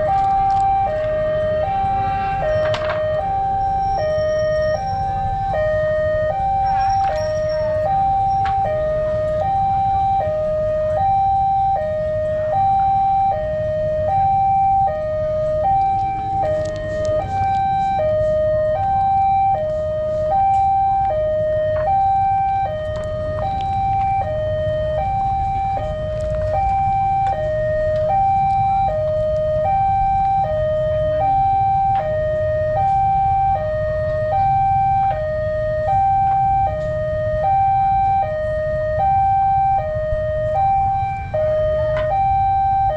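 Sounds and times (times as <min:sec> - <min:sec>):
steady low rumble: 0:00.0 - 0:42.9
two-tone crossing warning siren: 0:00.0 - 0:42.9.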